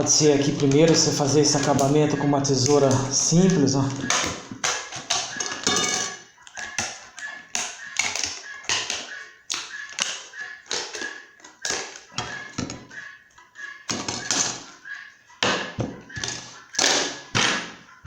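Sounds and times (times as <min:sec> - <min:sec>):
scissors cutting plastic: 0:00.1 - 0:05.8, 0:06.4 - 0:12.8.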